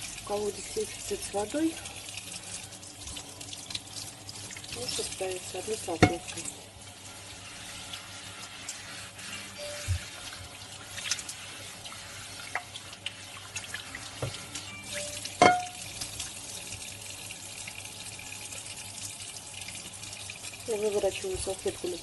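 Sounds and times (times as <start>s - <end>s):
tap water running into sink: 0.0s - 22.0s
cloth scrubbing frying pan: 4.8s - 14.5s.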